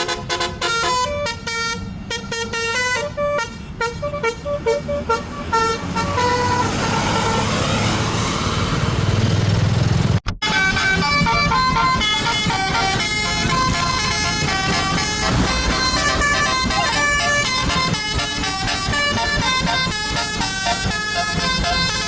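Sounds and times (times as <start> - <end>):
multi-tone air horn tune: 0.0 - 7.8, 10.4 - 22.0
bus engine running: 0.0 - 22.0.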